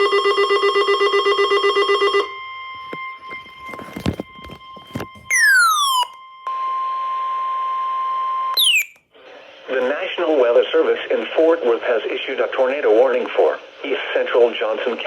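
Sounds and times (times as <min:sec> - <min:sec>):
pulsing electronic alarm: 0:00.1 - 0:06.9, 0:08.6 - 0:09.0
steady alert tone: 0:05.3 - 0:06.1, 0:08.6 - 0:09.0
tone sliding downward in pitch: 0:05.3 - 0:06.2, 0:08.6 - 0:09.0.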